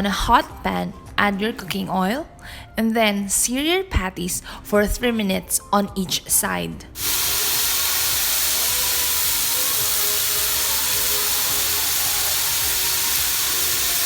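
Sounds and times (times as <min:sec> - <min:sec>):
burger patties sizzling in oil: 0:07.0 - 0:14.0.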